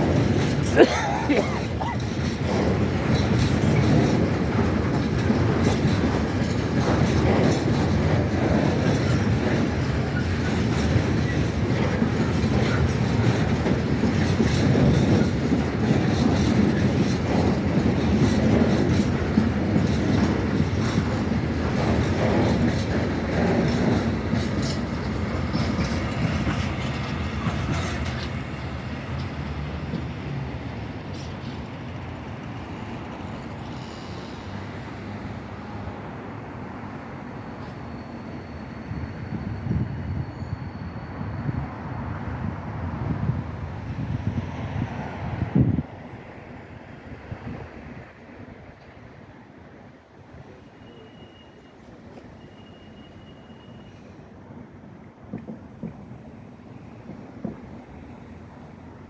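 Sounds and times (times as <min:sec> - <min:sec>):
train wheels clattering over rail joints: 0:00.0 - 0:35.3, 0:55.0 - 0:59.0.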